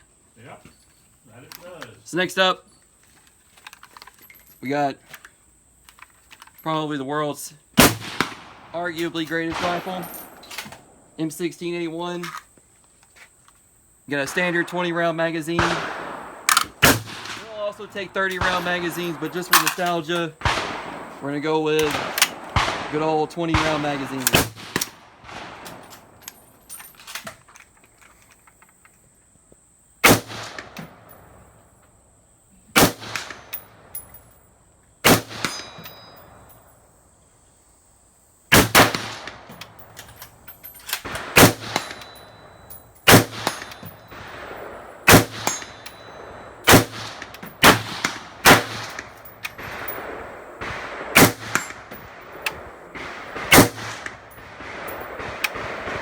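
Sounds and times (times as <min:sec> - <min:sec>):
rifle shots: 0:07.8 - 0:12.4, 0:14.1 - 0:26.6, 0:30.0 - 0:31.5, 0:32.8 - 0:34.2, 0:35.0 - 0:36.6, 0:38.5 - 0:56.0
metallic clangs on steel targets: 0:08.9 - 0:10.8, 0:35.2 - 0:36.7, 0:39.3 - 0:44.4, 0:45.1 - 0:50.0.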